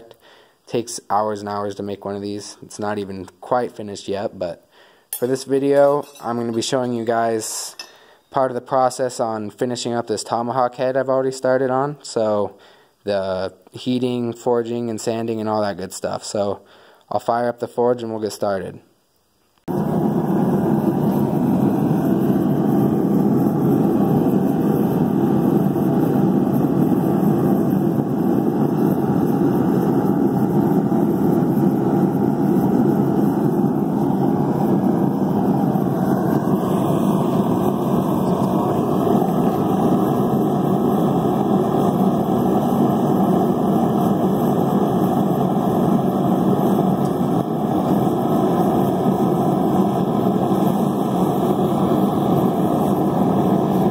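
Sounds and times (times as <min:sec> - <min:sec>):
forge fire rushing: 0:19.7 - 0:53.9.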